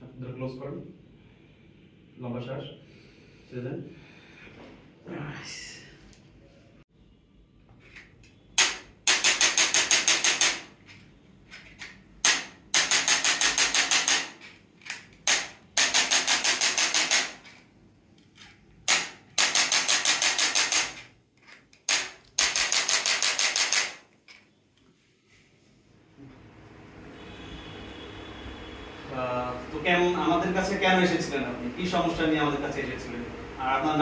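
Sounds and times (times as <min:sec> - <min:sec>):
percussive device tapping: 0:08.6 - 0:10.7, 0:12.2 - 0:14.4, 0:15.2 - 0:17.4, 0:18.9 - 0:21.1
sharp click: 0:08.6 - 0:10.7.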